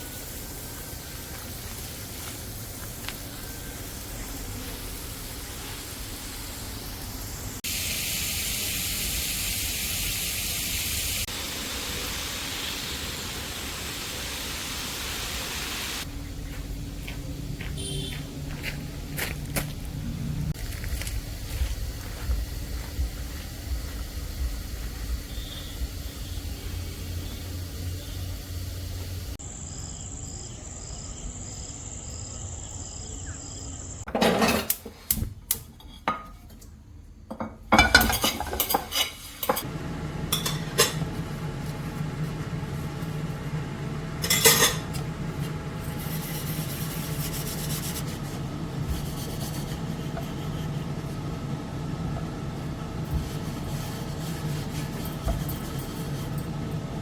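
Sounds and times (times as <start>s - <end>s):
steady low hum: 16.0s - 34.1s, 39.6s - 57.0s
utensils and dishes clattering: 34.1s - 35.0s, 37.3s - 39.7s, 40.3s - 41.1s, 44.2s - 45.1s, 54.7s - 56.8s
spoon scraping in a pan: 37.8s - 39.7s.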